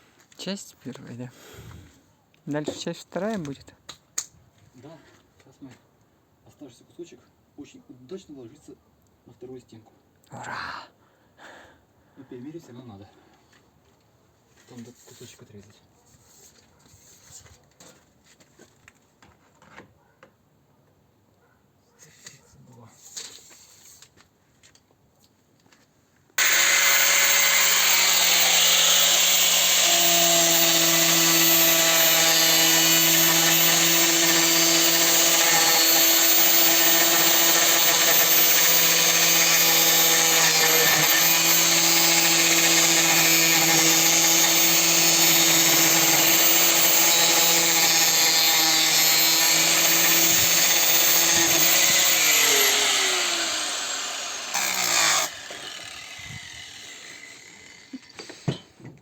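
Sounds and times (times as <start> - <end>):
power tool cutting siding: 26.4 - 58.4.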